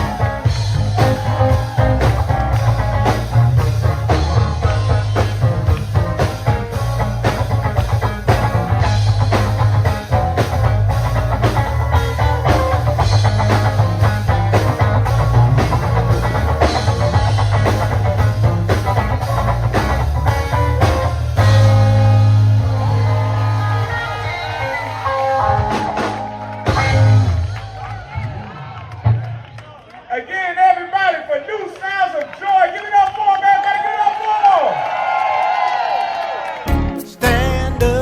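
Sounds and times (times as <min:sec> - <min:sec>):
electric guitar runs: 0:00.0 - 0:27.8
drumming: 0:00.0 - 0:28.4
live band playing: 0:00.0 - 0:29.2, 0:36.7 - 0:38.0.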